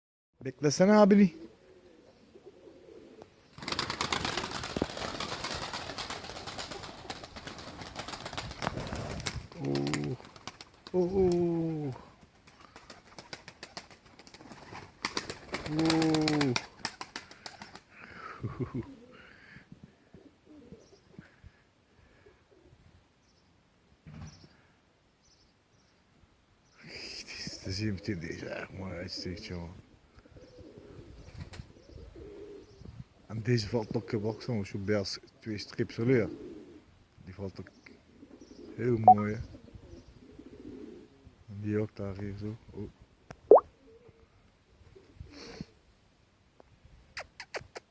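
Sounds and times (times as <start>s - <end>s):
pigeons cooing: 1.3s - 21.2s, 30.3s - 32.9s, 36.1s - 37.0s, 38.0s - 41.4s
bird chirping: 37.8s - 39.4s.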